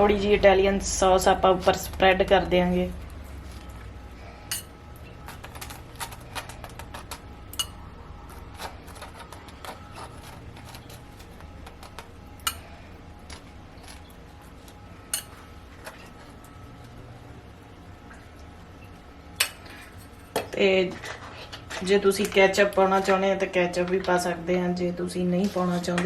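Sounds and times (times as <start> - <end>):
low steady hum: 0.0 - 26.0
spoon scraping on a plate: 4.5 - 12.8.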